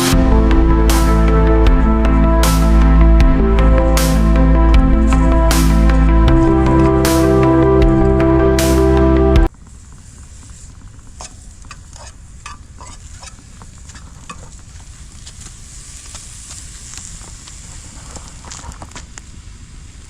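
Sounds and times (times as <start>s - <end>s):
low rumble: 0.0s - 9.5s
clicks and crackles: 10.7s - 19.3s.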